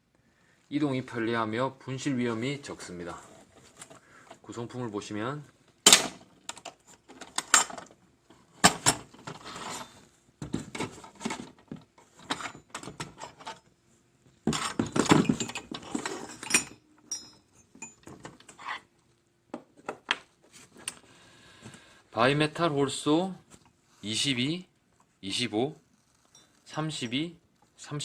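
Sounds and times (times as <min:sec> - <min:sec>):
metal tools clinking and rattling: 0:05.9 - 0:08.0, 0:10.8 - 0:13.7, 0:14.5 - 0:18.8.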